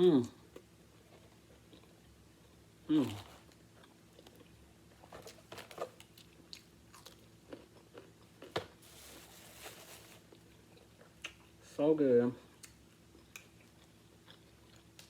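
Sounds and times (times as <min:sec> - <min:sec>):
close-miked chewing: 0:00.5 - 0:08.6, 0:12.5 - 0:15.0.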